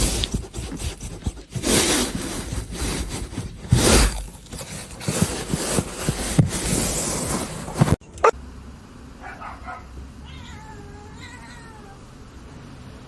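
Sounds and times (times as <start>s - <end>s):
rough scraping and rubbing: 0.0s - 8.0s.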